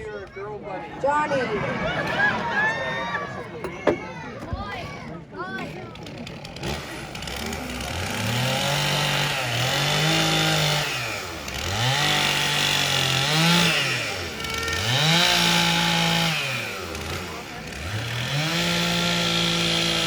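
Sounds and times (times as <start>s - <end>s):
chainsaw engine revving: 5.8s - 20.0s.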